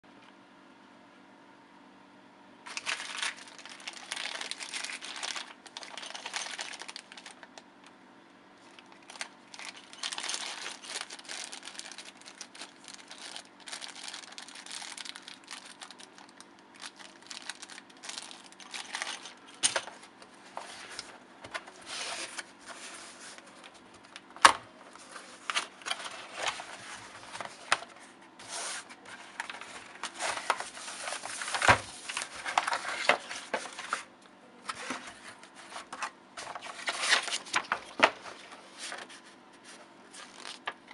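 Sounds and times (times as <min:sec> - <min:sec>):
faint steady hum: 0:00.1 - 0:40.9
plastic packaging crinkling and tearing: 0:02.7 - 0:07.7, 0:08.6 - 0:39.2, 0:40.1 - 0:40.9.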